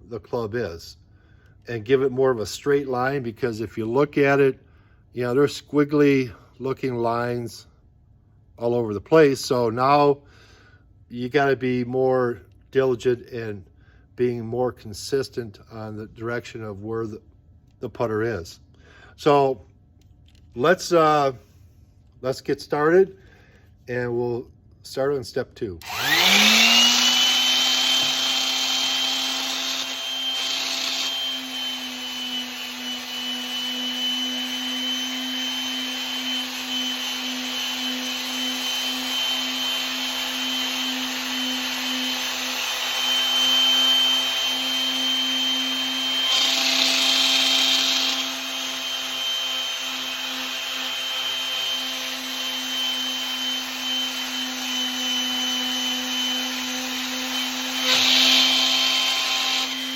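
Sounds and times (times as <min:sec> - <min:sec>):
electric sander motor hum and whine: 0:25.8 - 0:59.9.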